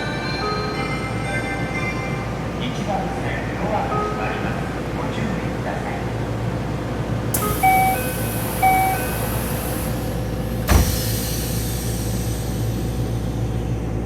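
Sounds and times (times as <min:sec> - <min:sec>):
train car steady hum: 0:00.0 - 0:14.0
train doors shutting thump: 0:07.3 - 0:13.0.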